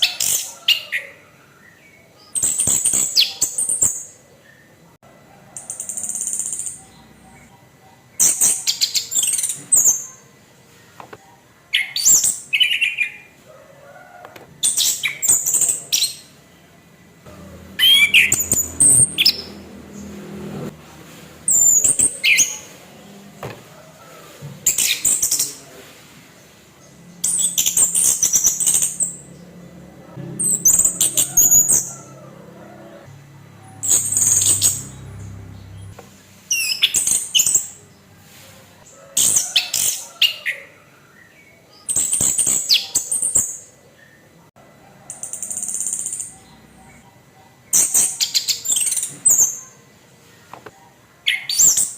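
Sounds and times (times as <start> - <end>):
thrush singing: 17.3 - 24.2.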